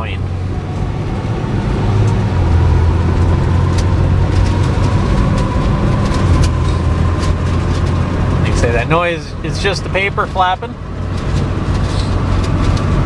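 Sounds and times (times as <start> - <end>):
engine and road rumble: 0.0 - 13.0
paper flapping and rattling: 3.7 - 8.1.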